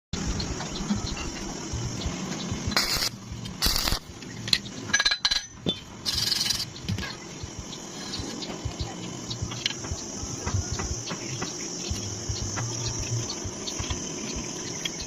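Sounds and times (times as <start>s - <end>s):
steady noisy background: 0.2s - 15.0s
hiss bursts: 1.7s - 4.2s.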